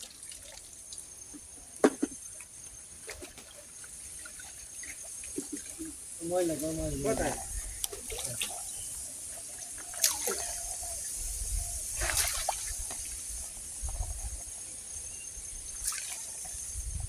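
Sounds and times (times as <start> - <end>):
water splashing and dripping: 0.0 - 8.8, 9.8 - 10.7, 12.0 - 13.2
sharp water splashes: 10.0 - 10.6, 12.0 - 12.8.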